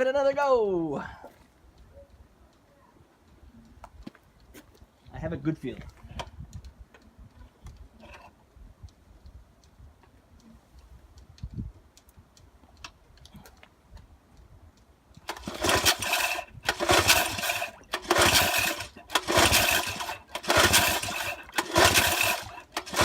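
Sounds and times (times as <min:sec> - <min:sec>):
outboard engine cranked by starter cord: 0:15.2 - 0:23.0.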